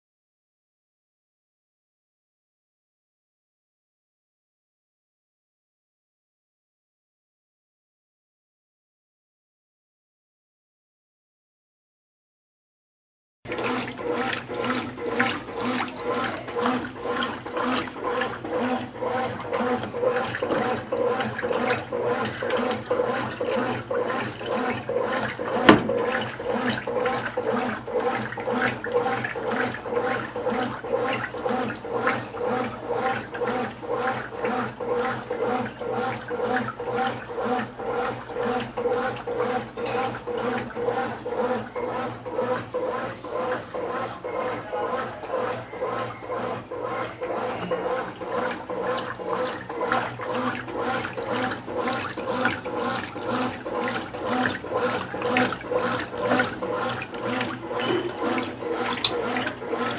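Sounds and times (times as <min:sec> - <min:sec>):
motor hum: 0:13.5 - 0:33.0, 0:40.3 - 0:59.9
washing machine water churning: 0:13.5 - 0:59.9.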